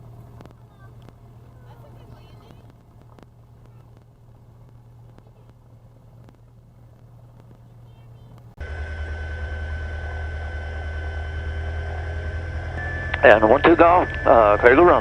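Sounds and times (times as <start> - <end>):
faint low hum: 0.0 - 15.0
light aircraft engine drone: 0.0 - 15.0
thin high whine: 8.6 - 15.0.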